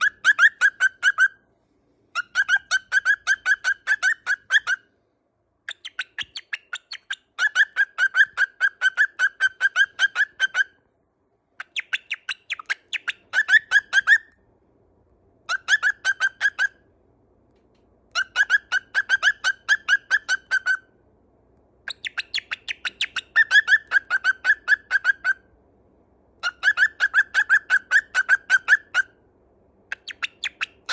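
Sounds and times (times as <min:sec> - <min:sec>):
cockatiel chirping: 0:00.0 - 0:01.4, 0:02.1 - 0:04.9, 0:05.7 - 0:10.8, 0:11.6 - 0:14.4, 0:15.4 - 0:16.8, 0:18.1 - 0:20.9, 0:21.9 - 0:25.5, 0:26.4 - 0:29.2, 0:29.9 - 0:30.9.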